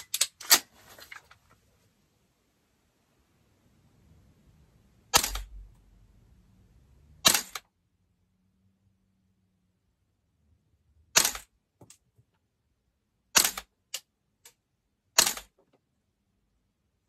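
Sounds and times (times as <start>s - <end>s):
airsoft gun shots: 5.1s - 5.5s.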